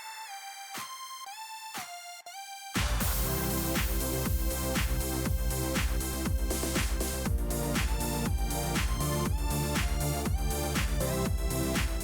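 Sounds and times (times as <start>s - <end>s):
electronic music with deep bass: 0.0s - 12.0s.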